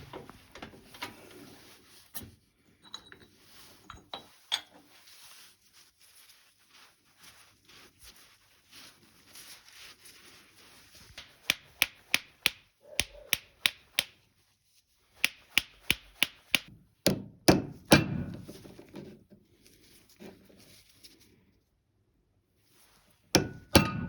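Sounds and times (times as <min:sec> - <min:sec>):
hammer tapping on metal parts: 0:15.2 - 0:18.4, 0:23.4 - 0:24.0.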